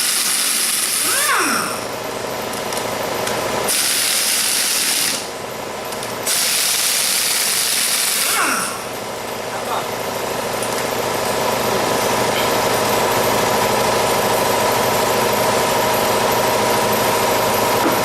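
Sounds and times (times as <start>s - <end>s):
power tool whining: 0.0s - 1.9s, 6.3s - 8.9s.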